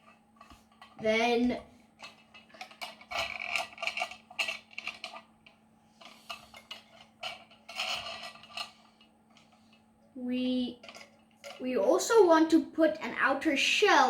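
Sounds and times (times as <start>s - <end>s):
cans scraping and rattling: 0.0s - 9.8s, 10.8s - 11.8s.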